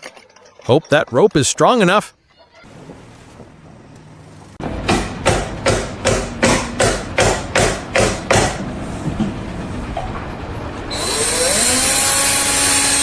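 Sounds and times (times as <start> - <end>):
rapid hammering strikes: 4.6 - 8.7.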